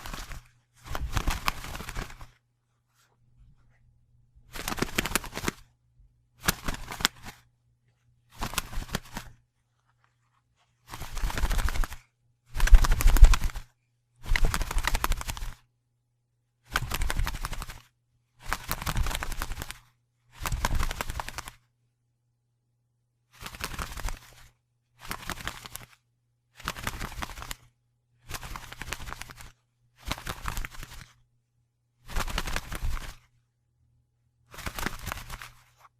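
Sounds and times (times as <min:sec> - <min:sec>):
wings flapping: 0:00.0 - 0:02.4, 0:04.5 - 0:05.7, 0:06.4 - 0:07.4, 0:08.3 - 0:09.4, 0:10.8 - 0:15.6, 0:16.7 - 0:21.6, 0:23.4 - 0:26.0, 0:26.6 - 0:27.7, 0:28.3 - 0:31.2, 0:32.0 - 0:33.3, 0:34.5 - 0:35.7.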